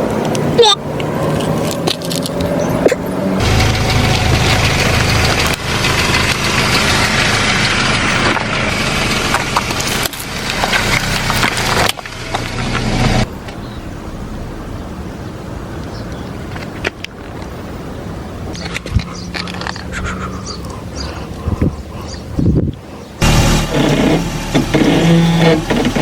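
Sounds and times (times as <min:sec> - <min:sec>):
car engine running: 0:00.0 - 0:16.3, 0:18.8 - 0:26.0
tyre crushing crunchy objects: 0:08.2 - 0:13.6.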